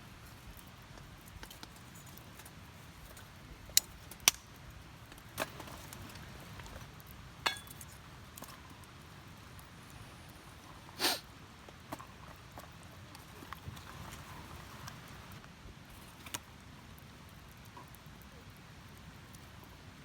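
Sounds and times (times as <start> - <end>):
small hard objects clinking: 7.4 - 8.0.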